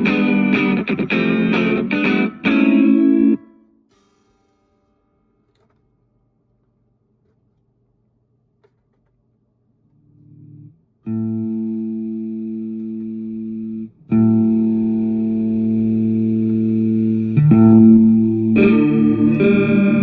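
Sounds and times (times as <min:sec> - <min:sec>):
electric guitar chords and notes: 0:00.0 - 0:04.3, 0:10.3 - 0:20.0.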